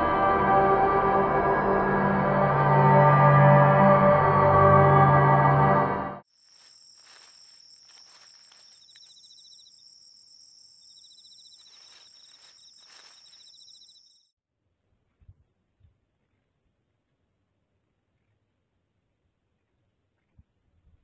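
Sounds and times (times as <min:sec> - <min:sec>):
crickets chirping: 0:06.2 - 0:14.3.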